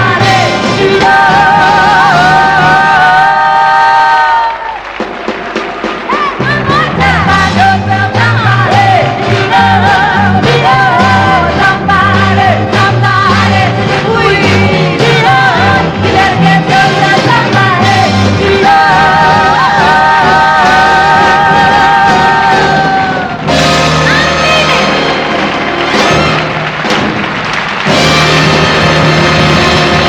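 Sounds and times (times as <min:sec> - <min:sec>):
live pop-soul band: 0:00.0 - 0:04.5, 0:05.2 - 0:30.0
female group vocals: 0:00.0 - 0:04.8, 0:06.1 - 0:23.3.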